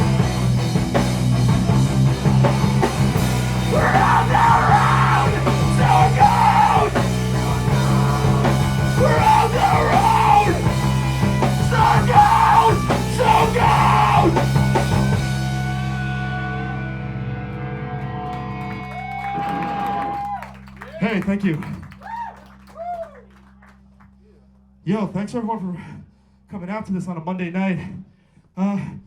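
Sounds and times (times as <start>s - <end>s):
distorted guitars and bass: 0.0s - 20.4s
person shouting vocals: 3.6s - 7.1s, 9.0s - 10.7s, 11.6s - 14.4s.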